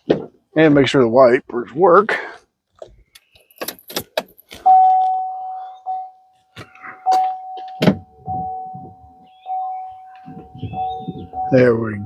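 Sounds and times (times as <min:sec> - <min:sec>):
car warning chime dinging: 0:04.6 - 0:12.0.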